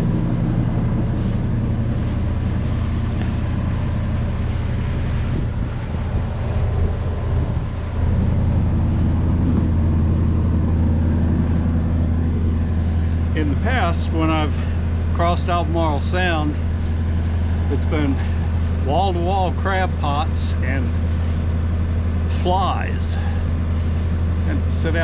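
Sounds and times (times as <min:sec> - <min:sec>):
boat engine running: 0:00.0 - 0:25.0
wind on microphone: 0:04.5 - 0:13.2.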